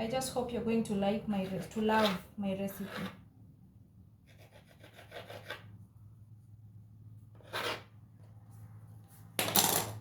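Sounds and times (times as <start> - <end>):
knife scraping dough on board: 1.3 - 3.3, 4.2 - 5.8, 7.3 - 8.0.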